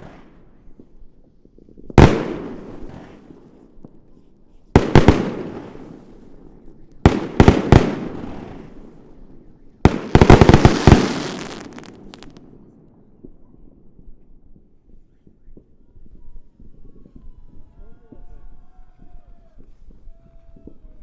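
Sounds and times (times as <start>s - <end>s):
fireworks bursting: 1.8s - 3.6s, 4.8s - 6.4s, 7.0s - 9.0s, 9.9s - 13.3s.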